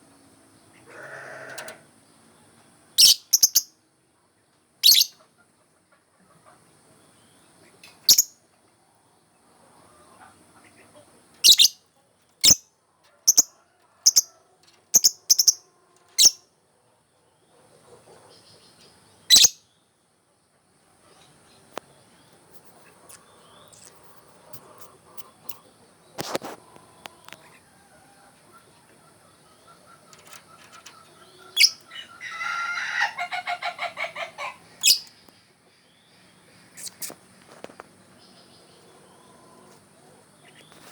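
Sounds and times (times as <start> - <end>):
lovebird shrill chirps: 3.0 - 3.7, 4.8 - 5.1, 8.1 - 8.3, 11.4 - 11.8, 15.0 - 15.6, 19.3 - 19.6, 31.5 - 32.9, 34.8 - 35.1.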